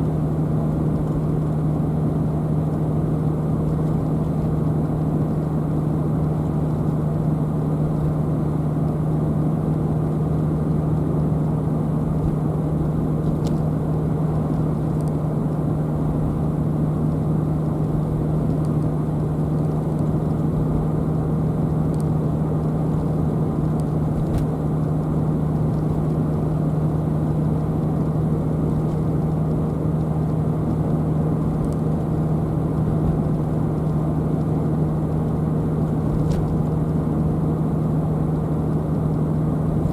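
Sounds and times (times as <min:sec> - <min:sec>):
car road and tyre noise: 0:00.0 - 0:39.9
constant low hum: 0:00.0 - 0:39.9.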